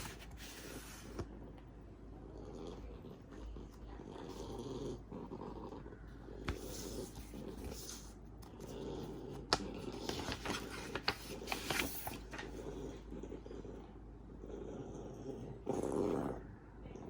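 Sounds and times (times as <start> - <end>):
steady low hum: 0.0 - 17.0
packaging clicks and crinkling: 9.5 - 12.6.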